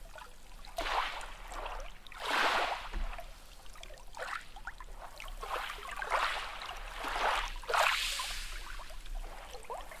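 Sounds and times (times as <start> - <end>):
water bubbling and trickling: 8.7 - 10.0.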